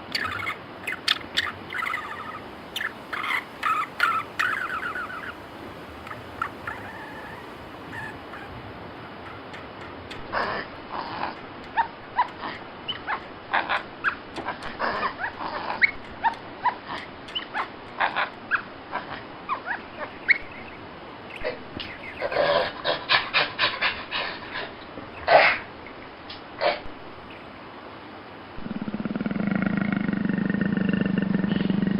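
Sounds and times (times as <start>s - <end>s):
dog yelps: 0.2s - 5.4s, 6.0s - 10.6s, 11.3s - 20.5s
dogs yipping and whimpering: 0.2s - 5.4s, 6.0s - 25.7s.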